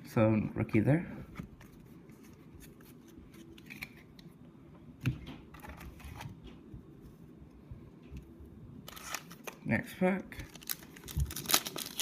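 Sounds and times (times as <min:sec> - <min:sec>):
trading cards rustling: 0:08.8 - 0:09.7, 0:10.4 - 0:12.0.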